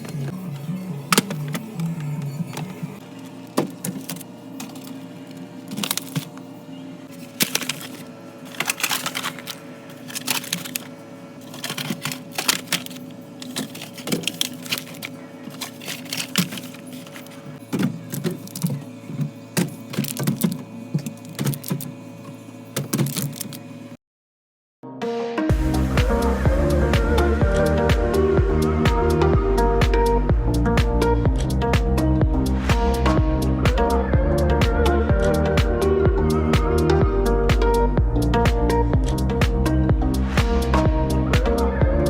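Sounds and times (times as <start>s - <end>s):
food containers clicking and knocking: 7.2s - 21.9s
soft background music: 25.4s - 42.0s.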